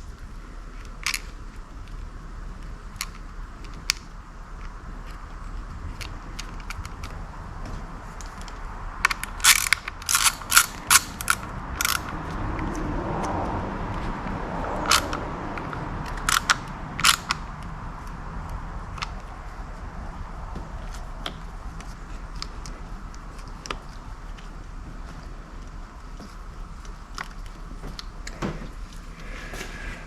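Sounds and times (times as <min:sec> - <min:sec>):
soft rustling scrape: 0:28.6 - 0:30.0.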